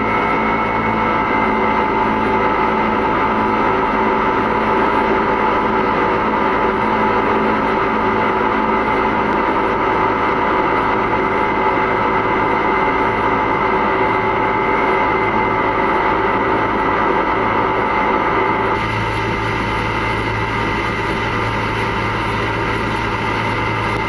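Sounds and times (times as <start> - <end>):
aircraft engine drone: 0.0 - 24.0
steady humming tones: 12.0 - 24.0
airflow rush: 18.8 - 24.0.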